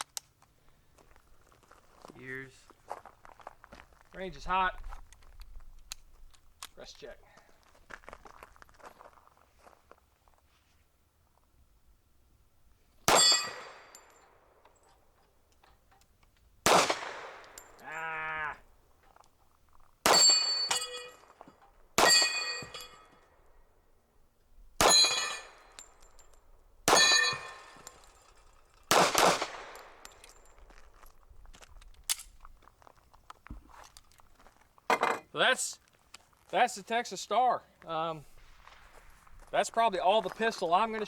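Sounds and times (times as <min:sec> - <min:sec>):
pistol shots: 0:13.1 - 0:14.1, 0:16.6 - 0:17.8, 0:20.0 - 0:20.9, 0:22.0 - 0:22.8, 0:24.8 - 0:25.9, 0:26.8 - 0:28.1, 0:28.9 - 0:30.4
bullets ringing steel plates: 0:13.1 - 0:14.4, 0:20.0 - 0:23.3, 0:24.8 - 0:30.6.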